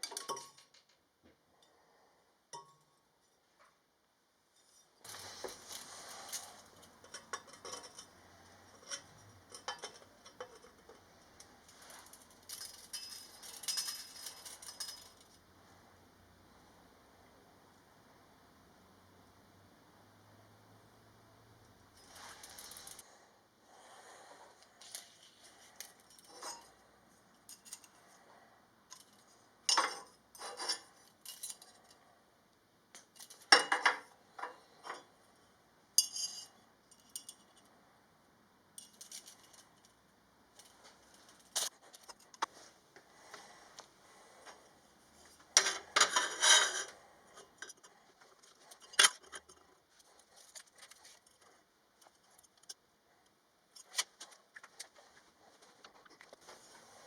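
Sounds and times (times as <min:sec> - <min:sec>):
metal tools clinking and clattering: 0:11.7 - 0:15.3, 0:28.9 - 0:32.0, 0:45.6 - 0:47.9.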